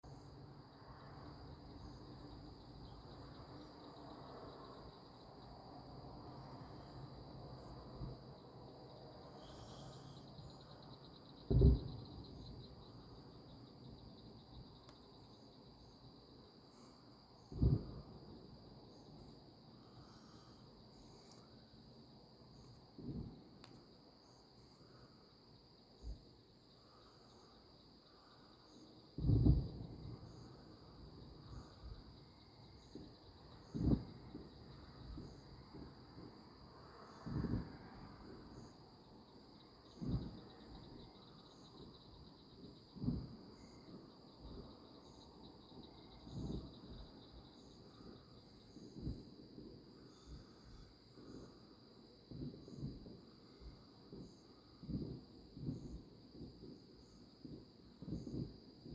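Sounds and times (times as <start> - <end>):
insects chirping: 0.0 - 58.9
distant fireworks booms: 4.7 - 25.2, 28.1 - 58.9
loud dull thump: 11.5 - 12.1.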